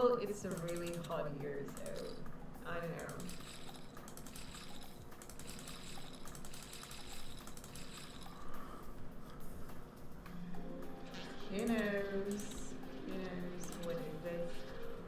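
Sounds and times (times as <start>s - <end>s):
computer keys or mouse clicking: 0.2s - 8.6s, 11.2s - 14.8s.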